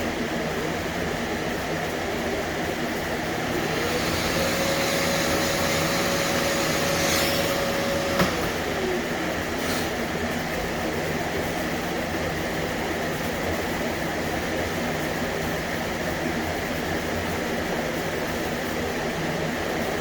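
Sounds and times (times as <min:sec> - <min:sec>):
steady mechanical drone: 0:02.4 - 0:11.6.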